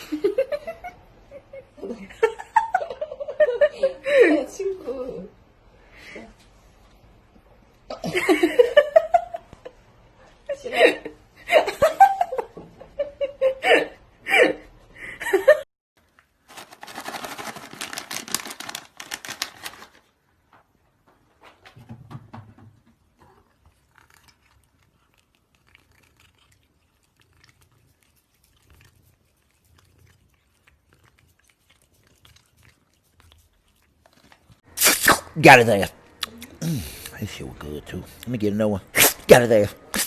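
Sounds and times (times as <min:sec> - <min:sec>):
crackling rustling noise: 0:16.0 - 0:21.8
person laughing: 0:35.1 - 0:37.1.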